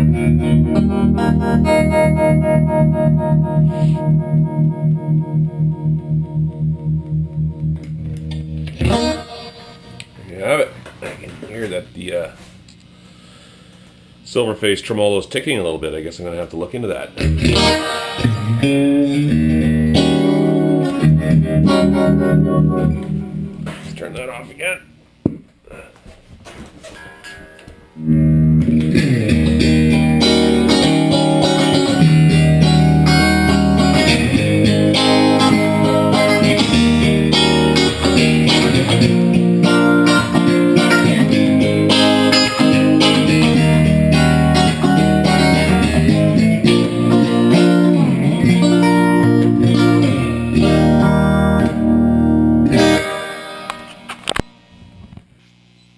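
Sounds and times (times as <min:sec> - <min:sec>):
electric guitar chords and notes: 0:00.0 - 0:10.2, 0:17.2 - 0:25.0, 0:26.9 - 0:55.7.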